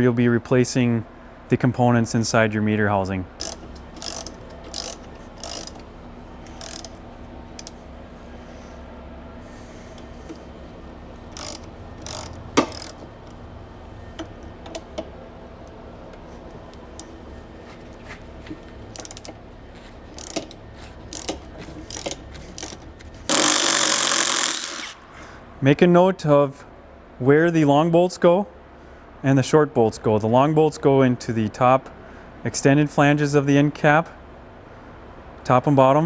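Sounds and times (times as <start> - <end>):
socket ratchet clicking: 3.4 - 7.9, 9.9 - 17.3, 18.4 - 25.1.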